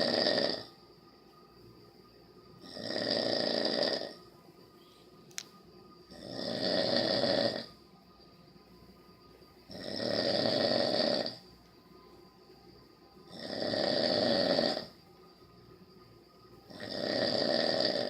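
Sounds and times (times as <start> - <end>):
person snoring: 0.0 - 0.7, 2.6 - 4.2, 6.1 - 7.8, 9.7 - 11.4, 13.3 - 15.0, 16.7 - 18.0.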